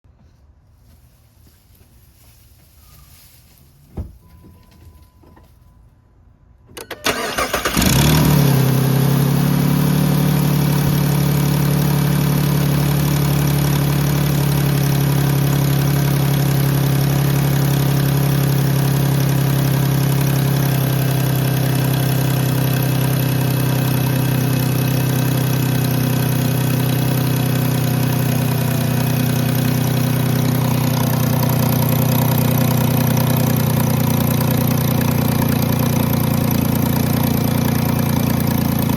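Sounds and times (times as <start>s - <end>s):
car engine starting: 6.7s - 38.9s
car engine idling: 7.0s - 38.9s.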